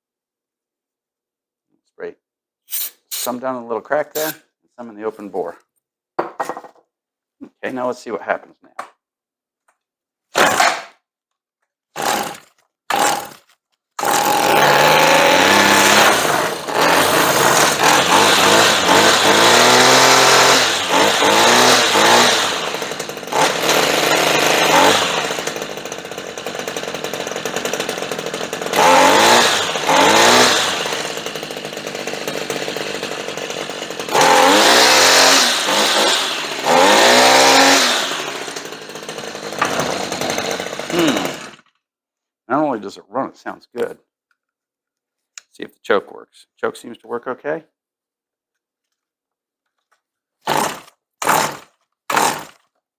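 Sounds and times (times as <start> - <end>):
string trimmer engine revving: 4.1 - 4.4, 12.0 - 13.4, 14.0 - 41.7, 50.4 - 52.6.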